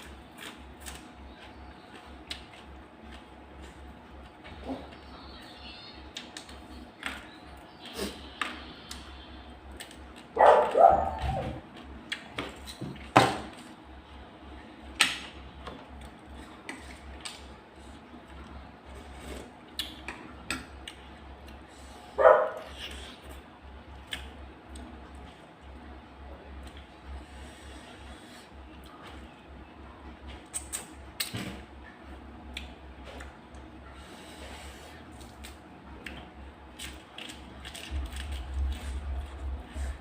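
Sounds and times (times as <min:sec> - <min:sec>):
dog barking: 0:10.4 - 0:11.6, 0:22.2 - 0:22.7.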